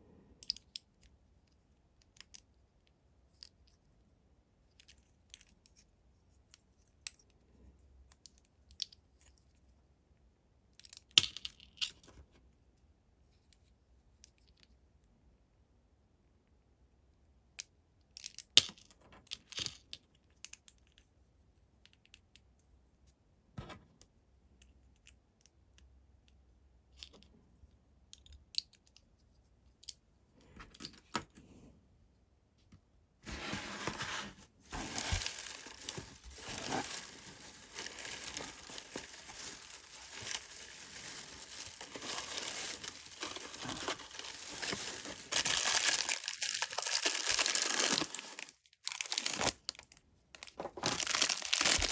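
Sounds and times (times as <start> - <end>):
small clicks of items handled: 0.4 - 3.9, 4.7 - 7.4, 8.0 - 9.6, 10.7 - 12.3, 13.4 - 14.8, 17.6 - 21.1, 21.8 - 22.7, 23.6 - 27.4, 28.0 - 31.5, 34.7 - 46.2
packaging tearing and crinkling: 33.8 - 49.9, 50.8 - 51.9.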